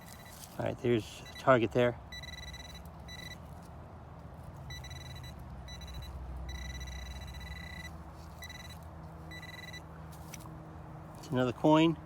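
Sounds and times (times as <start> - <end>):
metal detector high-pitched tone: 0.0 - 0.4, 1.2 - 3.4, 4.7 - 9.8.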